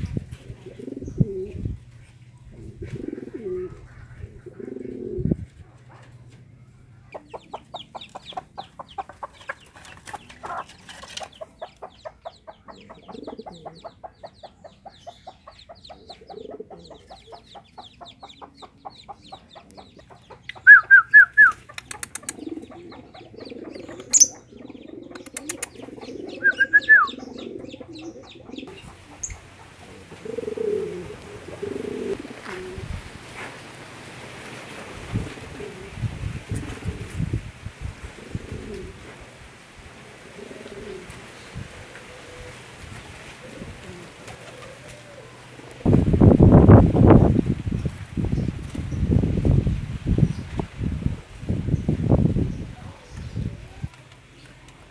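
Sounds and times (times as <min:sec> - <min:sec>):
pigeons cooing: 0:00.0 - 0:50.0
rapid clicking calls: 0:19.0 - 0:30.5.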